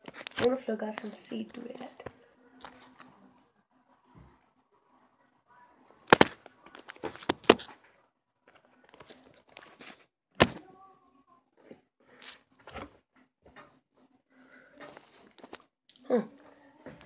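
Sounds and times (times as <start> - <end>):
rustling and handling noise: 0.0 - 3.3, 5.9 - 10.8, 11.6 - 15.7.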